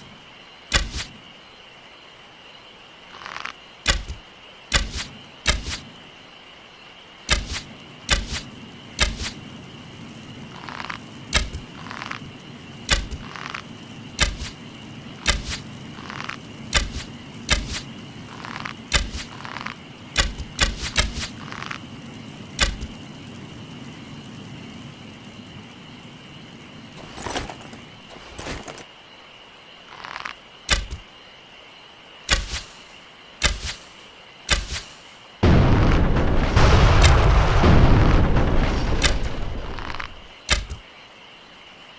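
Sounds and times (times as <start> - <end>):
arrow shots: 35.8 - 40.8.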